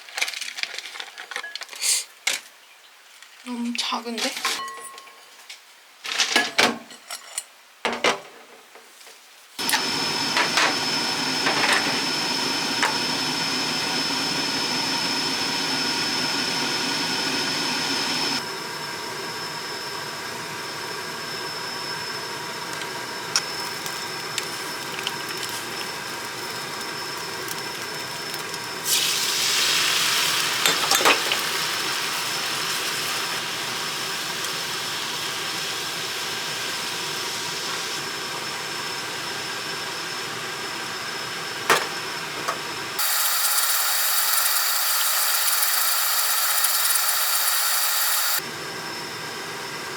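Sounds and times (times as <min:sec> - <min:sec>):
electric motor whining: 0:09.6 - 0:18.4, 0:43.0 - 0:48.4.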